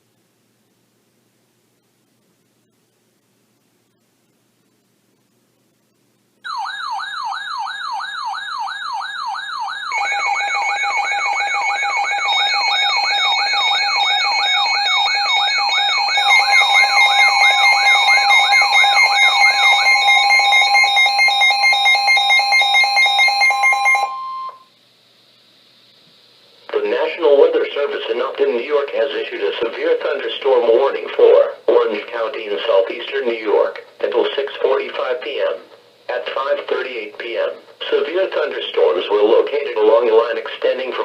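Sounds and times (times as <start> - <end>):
warbling siren tone: 6.5 - 24.7
steady electronic tone: 9.8 - 24.7
pulsing beep tones: 9.9 - 24.7.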